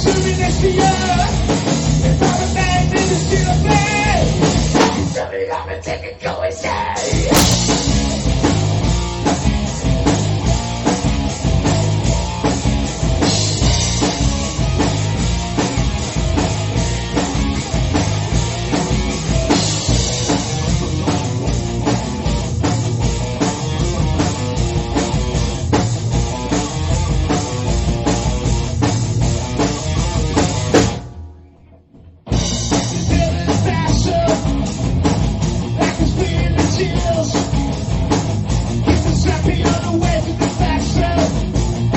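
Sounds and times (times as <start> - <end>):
rock band playing: 0.0 - 5.2, 7.2 - 41.9
heavy bass drum: 7.3 - 10.4, 32.3 - 41.9.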